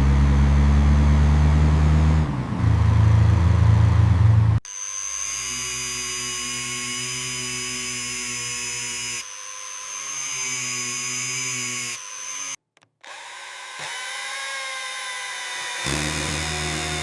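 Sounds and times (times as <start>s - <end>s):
power tool whining: 4.6s - 17.0s.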